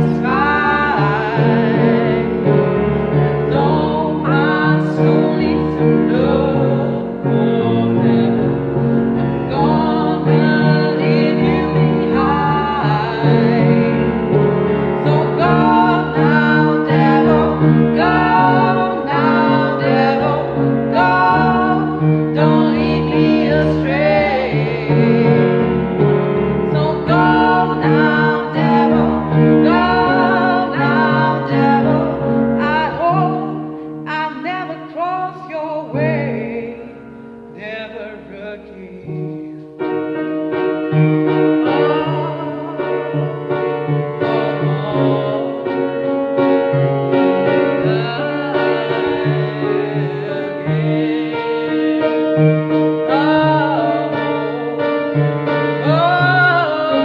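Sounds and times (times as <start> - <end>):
person singing: 0.0 - 25.9, 26.6 - 39.8, 41.3 - 57.0
sustained instrumental chords: 0.0 - 34.1.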